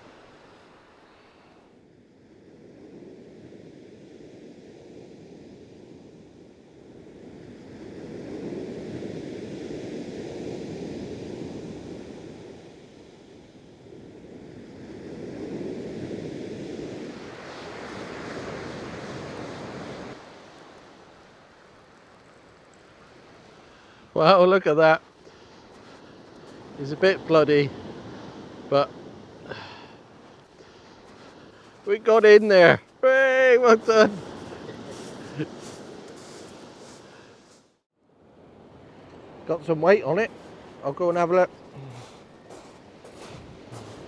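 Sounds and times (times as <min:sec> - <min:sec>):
surf breaking on shingle: 0:30.6 - 0:37.3
wind on microphone: 0:41.4 - 0:44.0.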